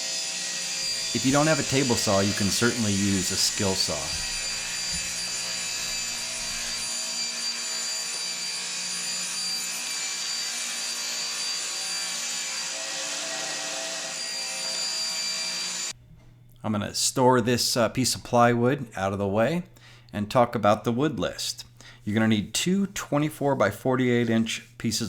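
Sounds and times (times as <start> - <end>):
table saw cutting plywood: 0.0 - 15.9.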